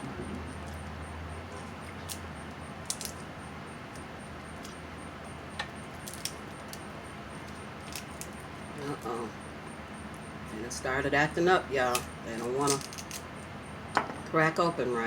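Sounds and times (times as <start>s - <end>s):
low steady hum: 0.0s - 15.0s
crab shells snapping: 2.0s - 3.3s, 3.9s - 4.8s, 5.9s - 8.4s, 11.9s - 13.2s.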